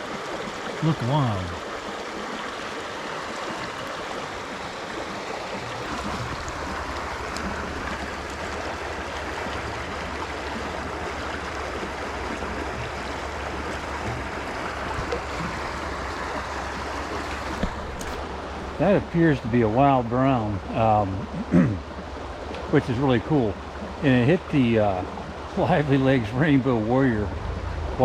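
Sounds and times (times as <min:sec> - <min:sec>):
water rushing over rocks: 0:00.0 - 0:28.0
low rumble: 0:25.5 - 0:28.0.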